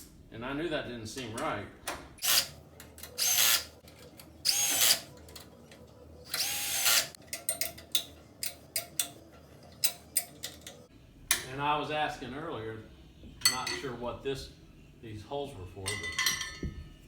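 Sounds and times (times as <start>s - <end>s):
power drill driving bolts: 2.2s - 2.5s, 3.2s - 3.7s, 4.4s - 5.0s, 6.3s - 7.2s
light metal clicks and taps: 7.3s - 11.5s.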